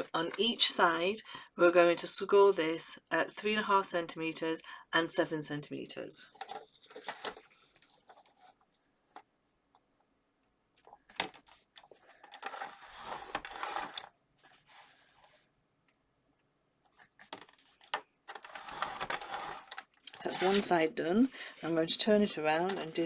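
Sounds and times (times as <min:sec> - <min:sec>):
scoring tool scraping card: 0:12.4 - 0:15.4, 0:17.1 - 0:20.9.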